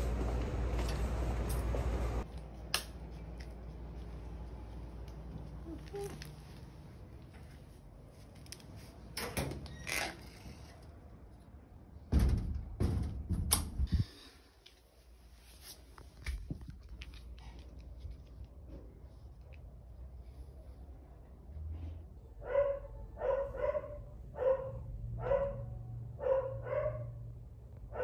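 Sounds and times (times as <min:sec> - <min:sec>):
knocks and thuds: 0:12.1 - 0:13.9.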